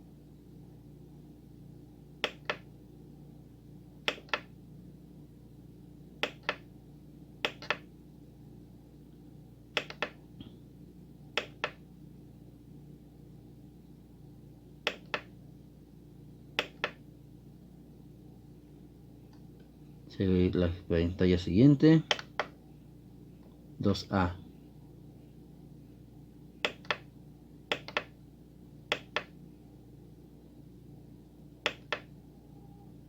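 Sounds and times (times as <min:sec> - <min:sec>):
low steady hum: 0:00.0 - 0:33.0
keyboard buttons clicking: 0:02.2 - 0:02.6, 0:04.1 - 0:04.5, 0:06.2 - 0:06.6, 0:07.4 - 0:07.8, 0:09.8 - 0:10.2, 0:11.4 - 0:11.8, 0:14.9 - 0:15.3, 0:16.6 - 0:17.0, 0:22.1 - 0:22.6, 0:26.6 - 0:27.1, 0:27.7 - 0:28.1, 0:28.9 - 0:29.3, 0:31.6 - 0:32.1.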